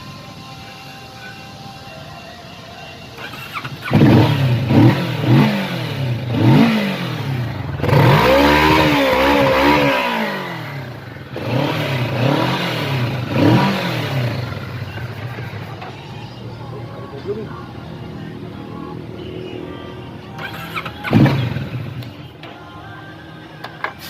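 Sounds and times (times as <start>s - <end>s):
motorcycle engine revving: 3.1s - 16.3s, 20.2s - 22.5s.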